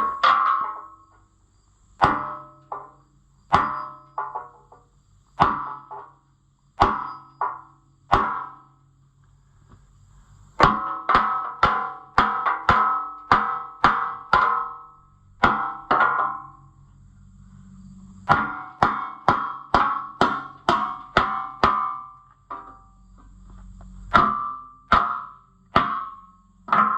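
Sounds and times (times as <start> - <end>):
hammer clanging on steel: 0.0 - 1.2, 2.0 - 6.2, 6.8 - 8.8, 10.6 - 16.8, 18.2 - 23.0, 24.1 - 26.9.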